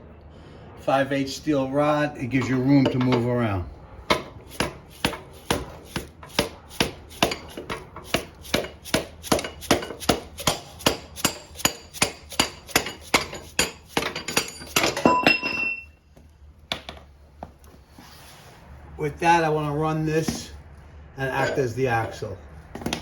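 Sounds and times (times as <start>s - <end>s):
hammer striking steel rod: 4.1s - 15.8s.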